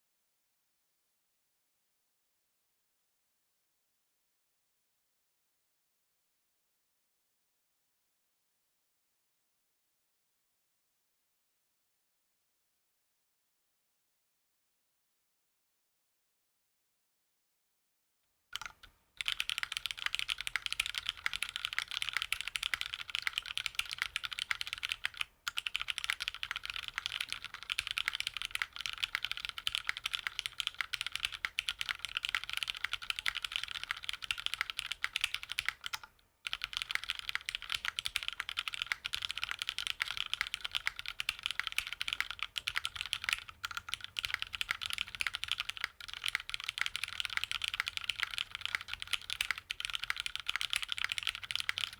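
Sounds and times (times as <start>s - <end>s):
mechanical keyboard typing: 18.6s - 51.9s.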